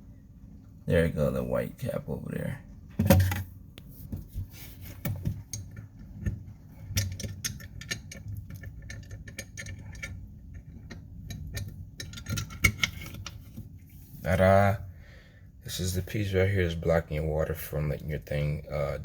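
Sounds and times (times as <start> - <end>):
faint low hum: 0.0 - 19.0
small hard parts clicking: 5.3 - 13.4.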